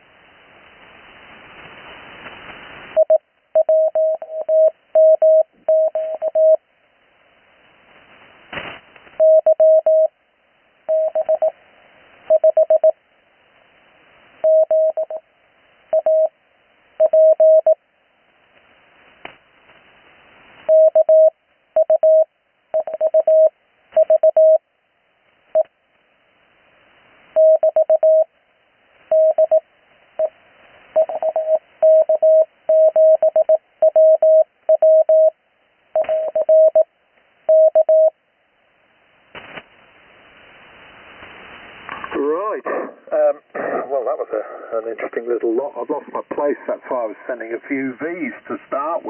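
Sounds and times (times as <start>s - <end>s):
receiver hiss: 0.0s - 49.0s
static clicks: 1.6s - 6.6s, 25.2s - 26.0s, 36.0s - 37.3s
morse code tone: 3.0s - 6.6s, 9.2s - 10.1s, 10.9s - 11.5s, 12.3s - 12.9s, 14.4s - 15.2s, 16.0s - 16.3s, 17.0s - 17.8s, 20.7s - 24.6s, 27.4s - 28.3s, 29.1s - 29.6s, 31.0s - 35.4s, 36.0s - 36.9s, 37.5s - 38.1s.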